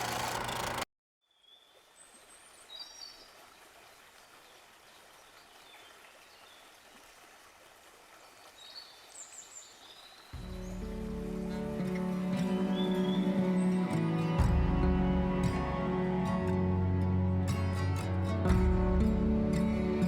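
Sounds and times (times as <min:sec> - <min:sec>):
faint river water rushing: 0:01.6 - 0:14.4.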